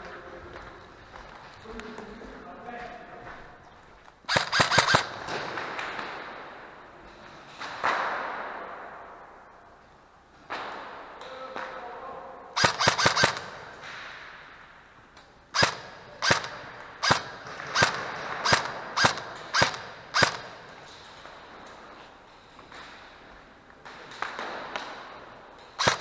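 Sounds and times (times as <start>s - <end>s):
airsoft gun shots: 4.3s - 6.5s, 12.6s - 21.1s, 25.8s - 26.0s.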